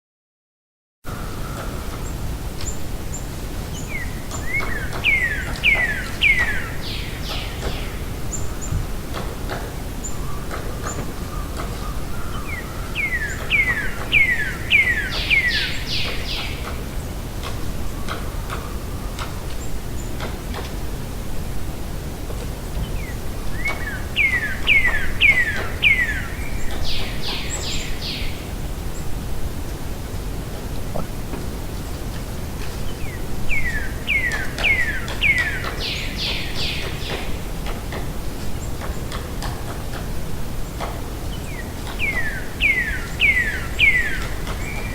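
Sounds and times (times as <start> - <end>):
distant woodpecker calling: 3.8 - 20.3, 32.9 - 38.0, 40.7 - 44.9
bird calling: 30.9 - 31.2.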